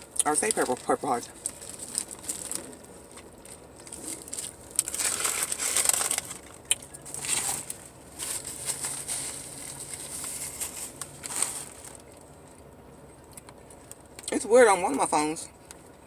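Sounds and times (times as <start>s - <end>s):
food wrapping crinkling: 0.0s - 12.6s.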